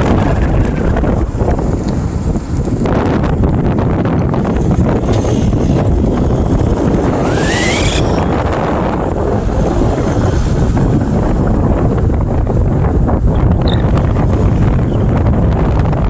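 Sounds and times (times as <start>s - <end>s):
wind buffeting microphone: 0.0s - 16.0s
rising whistle-like tone: 7.1s - 8.4s.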